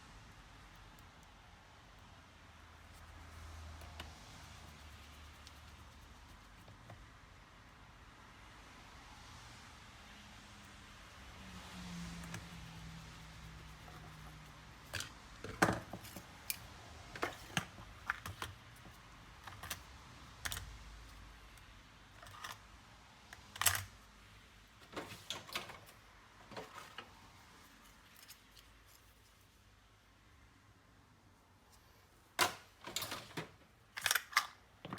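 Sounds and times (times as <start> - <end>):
small parts clicking and tapping: 33.9 - 34.9.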